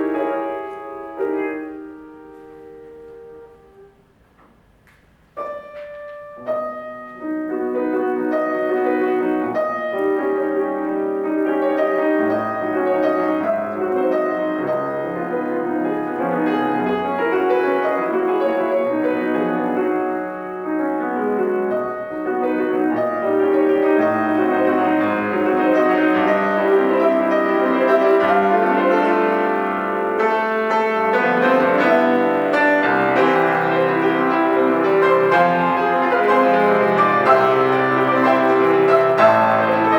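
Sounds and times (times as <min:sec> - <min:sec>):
solo piano classical music: 0:00.0 - 0:39.9.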